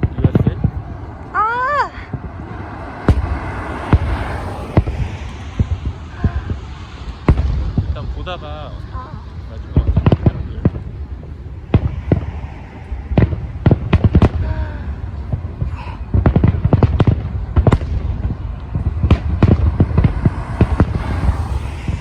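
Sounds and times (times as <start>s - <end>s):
fireworks booming and cracking: 0.0s - 22.0s
low rumble: 0.0s - 22.0s.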